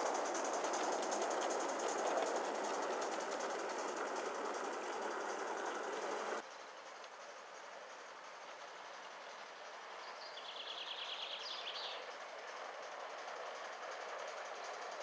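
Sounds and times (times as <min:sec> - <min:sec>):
model steam locomotive running: 0:00.0 - 0:15.0
outdoor background: 0:00.0 - 0:15.0.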